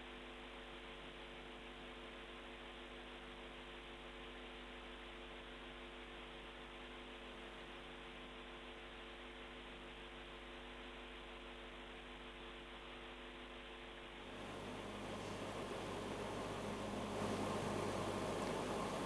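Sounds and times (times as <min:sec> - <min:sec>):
faint steady hiss: 0:00.0 - 0:19.0
electrical hum: 0:14.0 - 0:19.0.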